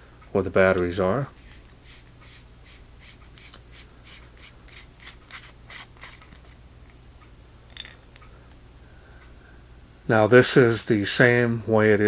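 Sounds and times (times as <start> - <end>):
flashlight screw threads grating: 1.4 - 6.6.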